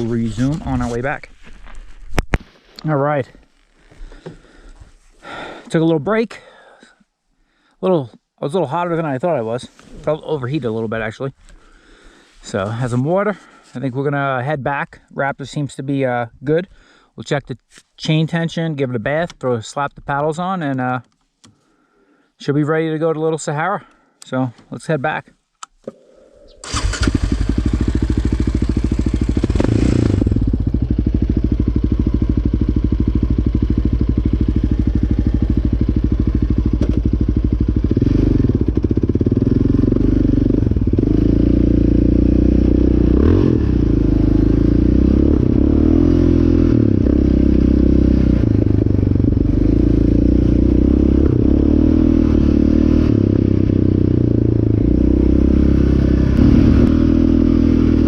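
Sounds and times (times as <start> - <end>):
quad bike engine revving: 26.6 - 58.0.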